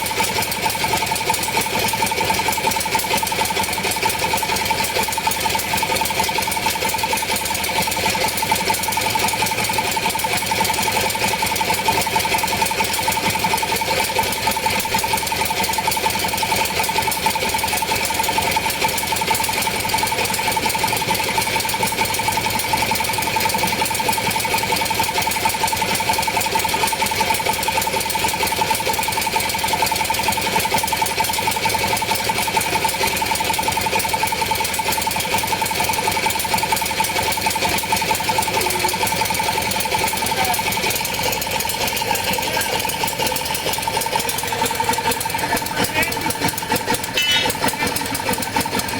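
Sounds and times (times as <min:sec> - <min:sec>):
machine motor rattling: 0:00.1 - 0:48.9
high machine whine: 0:45.5 - 0:48.2.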